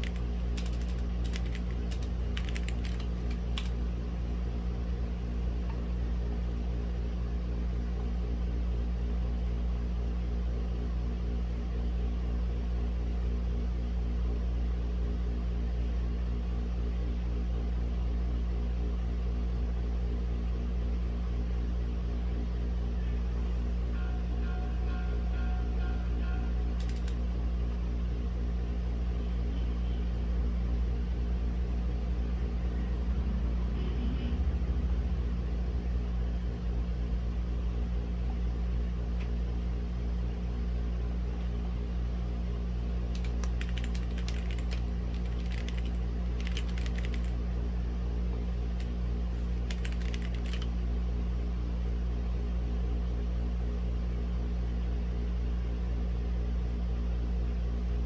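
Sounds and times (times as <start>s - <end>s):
mechanical keyboard typing: 0.0s - 3.8s, 26.8s - 27.2s, 43.2s - 47.4s, 48.8s - 50.7s
steady low hum: 0.0s - 9.2s, 35.3s - 54.1s.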